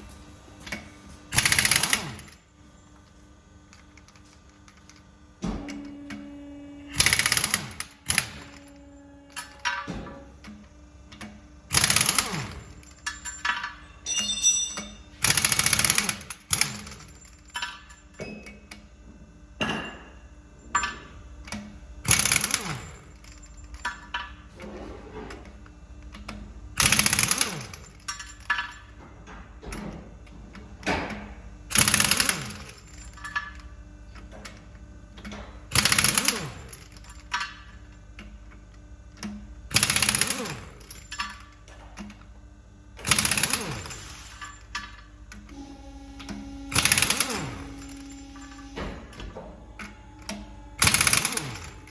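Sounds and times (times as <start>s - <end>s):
impact wrench hammering: 1.4s - 2.4s, 6.9s - 10.2s, 11.7s - 17.2s, 30.9s - 33.1s, 35.3s - 37.2s, 39.7s - 41.3s, 43.0s - 44.6s, 45.5s - 51.9s
clinks of nuts and tools: 11.1s - 18.8s, 19.6s - 24.7s, 26.2s - 30.0s, 39.2s - 42.2s.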